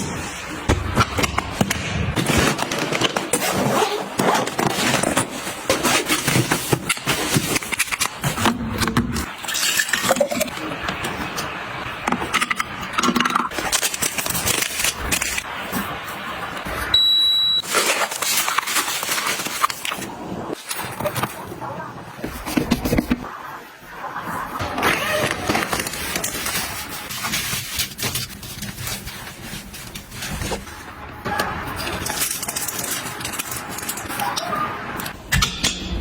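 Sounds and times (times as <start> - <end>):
short high electronic beep: 17.0 - 17.6
objects clicking and scraping: 31.3 - 36.0.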